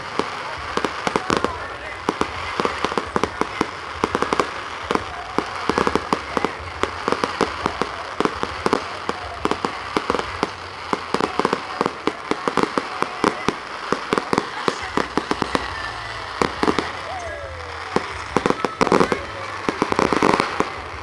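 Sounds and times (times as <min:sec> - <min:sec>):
fireworks bangs and cracks: 0:00.0 - 0:21.0.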